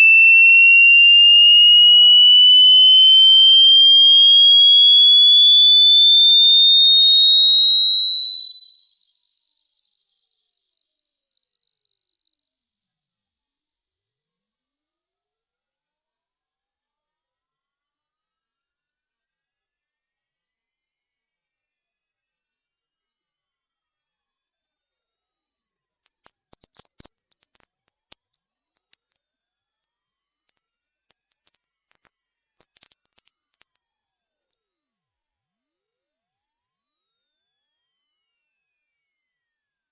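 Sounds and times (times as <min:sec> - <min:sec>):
pure tone rising in pitch: 0:15.3 - 0:34.6.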